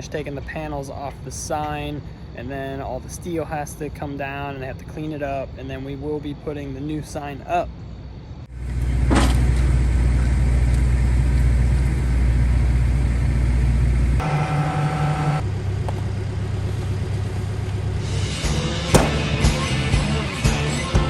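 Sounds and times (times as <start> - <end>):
heavy machine engine running: 8.6 - 19.7.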